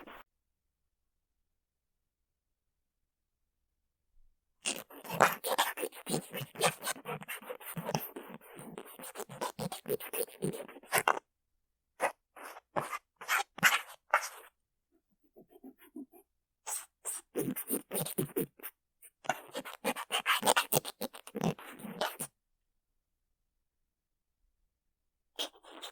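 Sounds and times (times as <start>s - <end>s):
cotton swab scratching on microphone: 4.7s - 11.2s, 12.0s - 14.5s, 15.2s - 22.3s, 25.4s - 25.9s.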